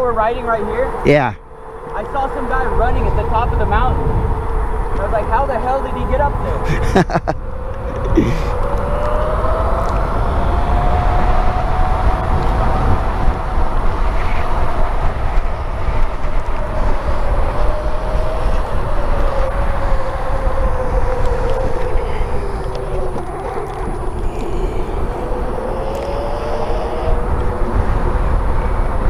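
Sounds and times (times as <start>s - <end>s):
wind rumble on microphone: 0.0s - 29.0s
electric motor whining: 7.0s - 29.0s.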